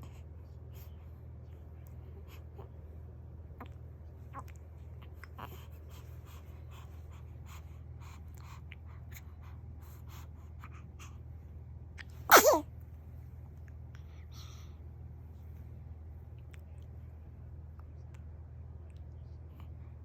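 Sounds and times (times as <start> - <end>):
baby sneezing: 12.3 - 12.7.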